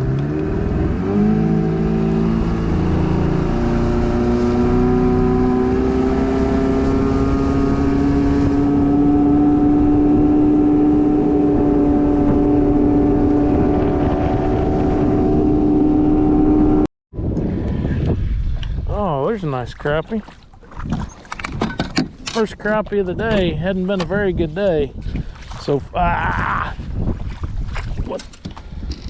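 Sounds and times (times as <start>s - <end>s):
outboard motor running: 0.0s - 16.9s.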